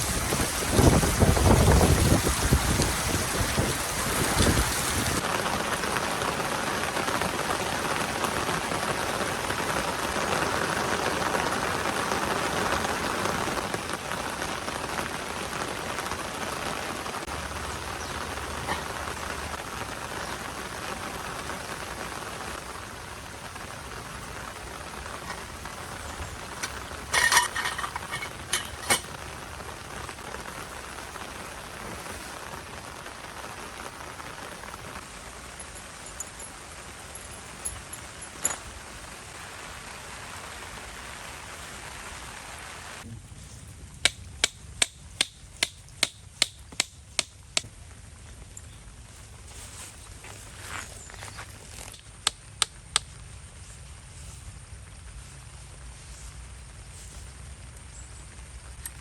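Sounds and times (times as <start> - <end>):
steady rain: 0.0 - 59.0
clinking knocks: 26.6 - 29.1, 35.6 - 38.8
sharp evenly spaced knocks: 44.0 - 47.7.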